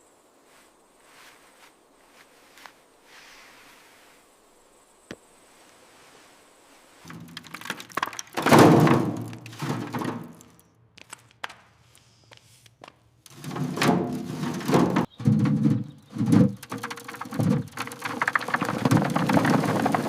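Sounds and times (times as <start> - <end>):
scraping: 7.0 - 10.7, 13.3 - 20.0
knocks and thuds: 7.1 - 10.4, 13.3 - 20.0.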